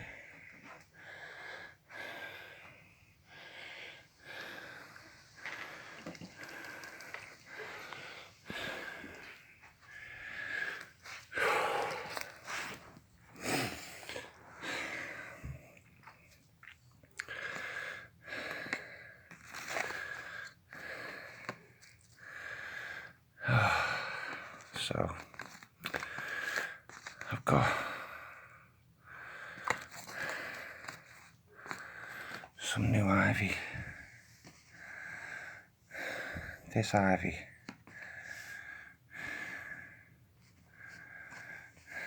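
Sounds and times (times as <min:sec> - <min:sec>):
man breathing hard: 0:00.0 - 0:15.8, 0:17.2 - 0:19.2, 0:22.2 - 0:24.6, 0:33.6 - 0:36.7, 0:37.9 - 0:42.0.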